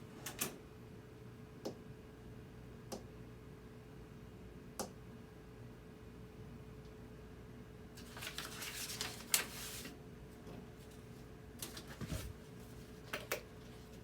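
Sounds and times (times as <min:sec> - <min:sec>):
faint steady hum: 0:00.0 - 0:14.0
rustling: 0:08.0 - 0:10.0.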